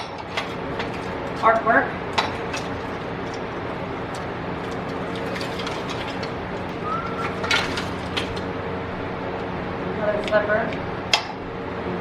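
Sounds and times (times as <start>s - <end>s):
steady background hum: 0.0s - 12.0s.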